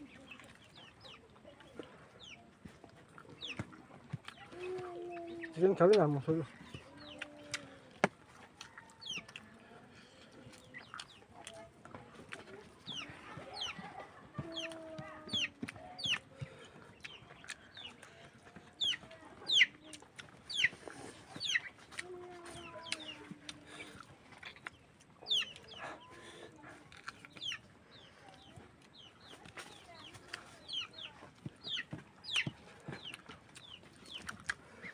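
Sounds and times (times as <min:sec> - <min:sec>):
chickens chirping: 0:00.0 - 0:34.9
chickens clucking: 0:00.0 - 0:34.9.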